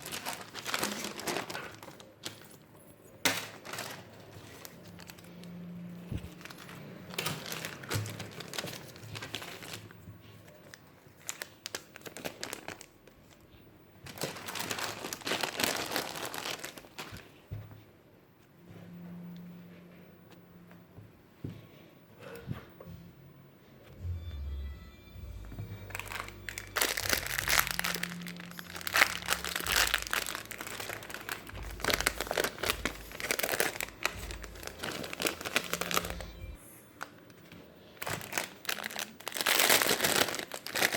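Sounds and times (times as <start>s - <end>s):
packaging crinkling: 0.0s - 2.6s, 3.3s - 13.4s, 14.0s - 17.4s, 25.8s - 40.9s.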